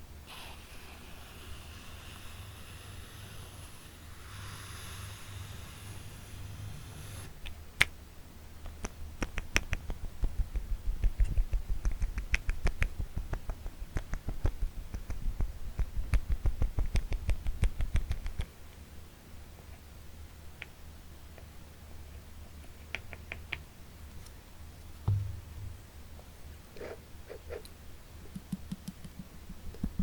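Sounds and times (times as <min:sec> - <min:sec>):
fingertips tapping: 0:28.3 - 0:30.0.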